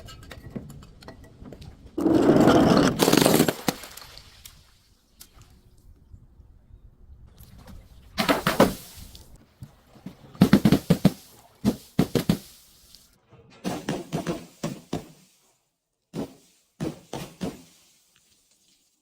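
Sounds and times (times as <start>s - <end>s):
objects cracking and crunching: 2.7s - 4.2s.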